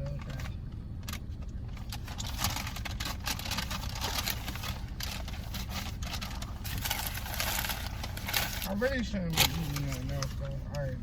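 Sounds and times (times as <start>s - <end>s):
steady low hum: 0.0s - 11.0s
bag rustling and crinkling: 1.8s - 10.7s.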